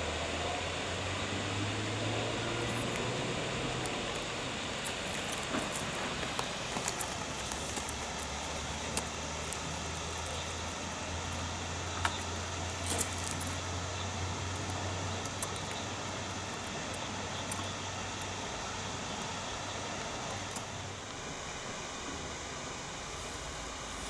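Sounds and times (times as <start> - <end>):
low even hum: 0.0 - 24.0
small ticks and clicks: 2.2 - 21.2.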